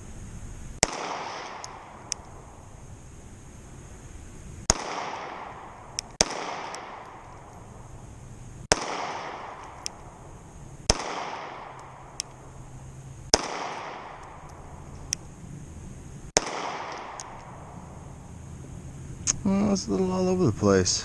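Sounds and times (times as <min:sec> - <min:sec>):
faint sharp cracks: 0:00.8 - 0:02.5, 0:04.6 - 0:07.7, 0:08.6 - 0:10.2, 0:10.8 - 0:12.5, 0:13.3 - 0:15.3, 0:16.3 - 0:17.6
pistol shots with echo: 0:00.8 - 0:02.6, 0:04.7 - 0:07.6, 0:08.7 - 0:10.3, 0:10.9 - 0:12.5, 0:13.3 - 0:14.7, 0:16.4 - 0:17.7.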